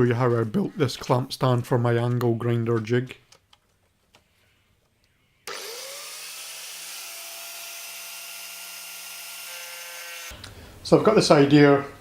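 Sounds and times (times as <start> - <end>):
power tool motor whine: 5.5 - 10.4.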